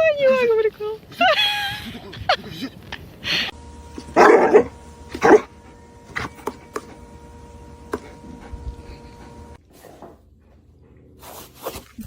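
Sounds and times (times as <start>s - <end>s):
faint steady hum: 0.1s - 11.2s
dog barking: 4.0s - 5.5s.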